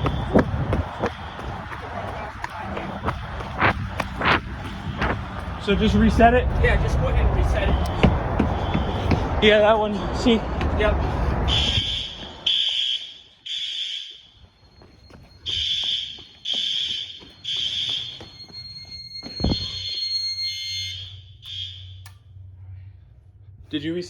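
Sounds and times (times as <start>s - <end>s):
fire alarm beeping: 11.5s - 22.4s.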